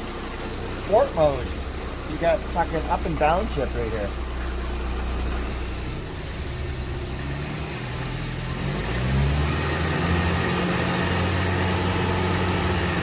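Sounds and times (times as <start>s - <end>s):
car engine accelerating: 0.0s - 13.0s.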